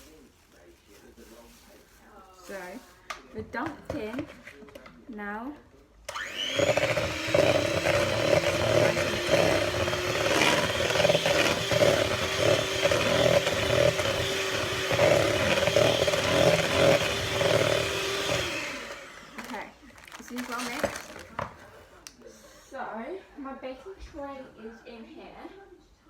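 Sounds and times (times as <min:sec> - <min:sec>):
electric kitchen mixer running: 0:06.1 - 0:21.6.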